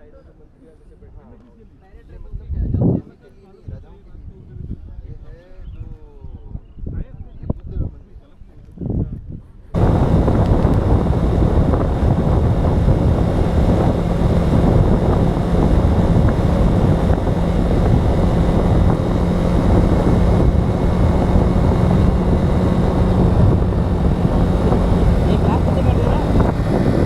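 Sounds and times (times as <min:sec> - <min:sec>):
motorcycle engine: 0:09.8 - 0:27.0
wind rushing over microphone: 0:09.8 - 0:27.0.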